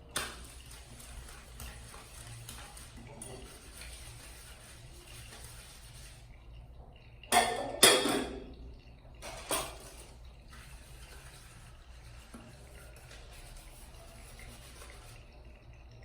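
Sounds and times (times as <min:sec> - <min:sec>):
kitchenware knocking and clattering: 0:07.3 - 0:08.5, 0:09.2 - 0:09.9.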